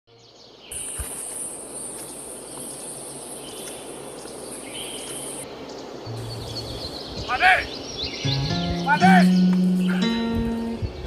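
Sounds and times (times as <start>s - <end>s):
faint outdoor hiss: 0.1s - 11.0s
insects buzzing: 0.2s - 11.0s.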